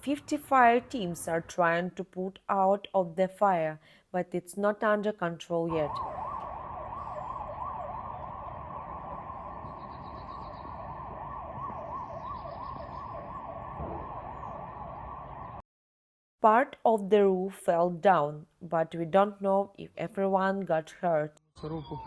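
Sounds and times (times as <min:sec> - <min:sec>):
emergency siren sweeping: 0:05.7 - 0:15.6.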